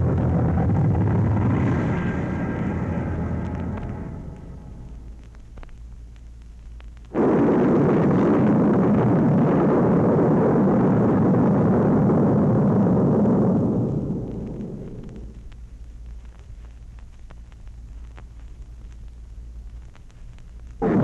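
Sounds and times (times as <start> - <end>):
loud rumbling blast: 0.0 - 5.5, 7.1 - 15.5, 20.8 - 21.0
faint low hum: 0.0 - 21.0.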